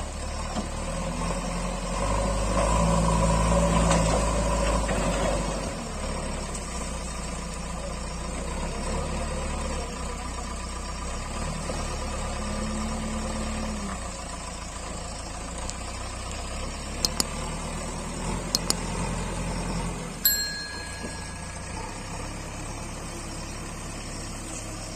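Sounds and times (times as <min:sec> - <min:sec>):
diesel engine running: 0:05.4 - 0:24.9
sharp clicks: 0:17.0 - 0:17.4, 0:18.6 - 0:18.8.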